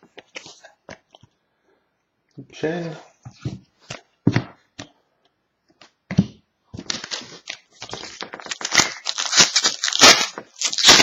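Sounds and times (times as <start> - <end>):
foil wrapper crinkling and tearing: 6.9 - 11.0.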